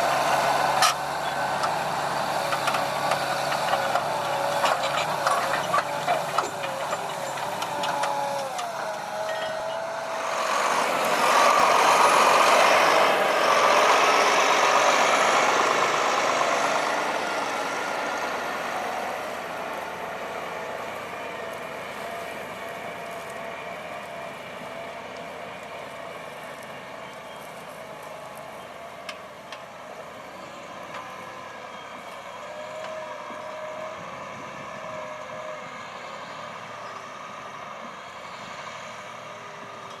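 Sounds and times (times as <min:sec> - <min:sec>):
tractor diesel engine running: 0:00.0 - 0:40.0.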